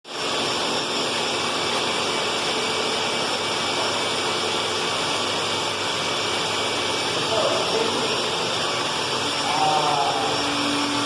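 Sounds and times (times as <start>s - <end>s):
concrete drill running: 0.1s - 11.0s.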